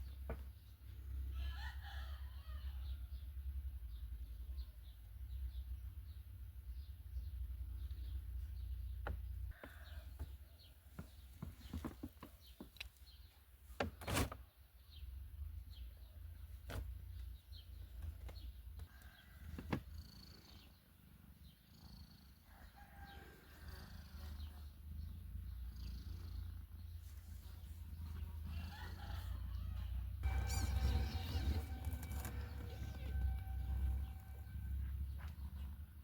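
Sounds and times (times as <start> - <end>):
cat purring: 19.8 - 22.5, 23.3 - 29.5
faint high-pitched squeaks: 28.1 - 35.8.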